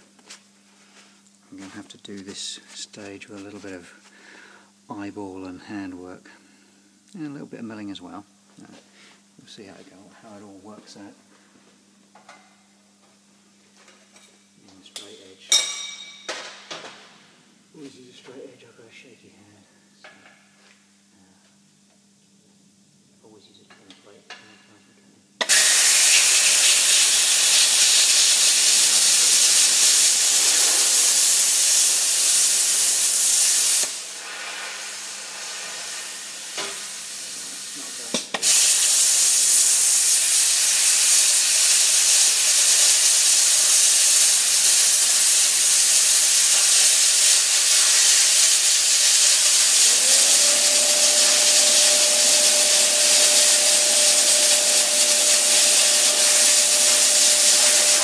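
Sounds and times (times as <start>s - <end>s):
plasma cutter hissing: 25.4s - 58.0s.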